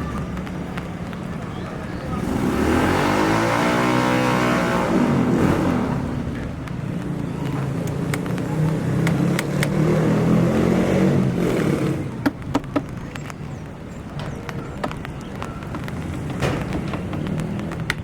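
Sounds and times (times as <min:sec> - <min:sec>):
vehicle engine rumbling: 0:00.0 - 0:18.0
sharp knocks and clicks: 0:12.2 - 0:13.4, 0:14.0 - 0:18.0.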